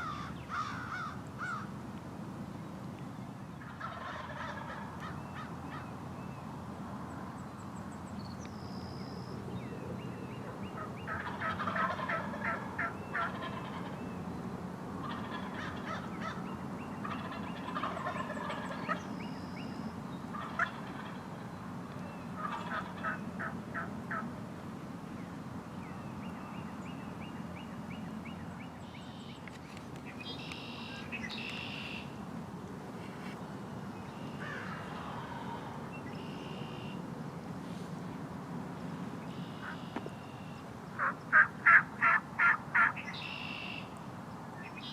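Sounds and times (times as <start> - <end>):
turkey gobbling: 3.8 - 4.9, 10.8 - 14.0, 15.0 - 16.4, 17.0 - 19.0, 20.3 - 21.2, 22.4 - 24.3, 41.0 - 43.5
songbirds whistling and trilling: 7.4 - 14.2, 15.1 - 23.4, 25.1 - 32.1, 33.2 - 37.0, 39.2 - 41.3, 42.8 - 44.0, 44.6 - 44.9.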